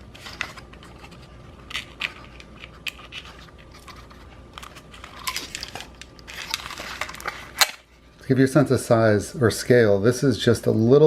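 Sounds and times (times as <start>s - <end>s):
packaging rustling: 0.0s - 7.9s.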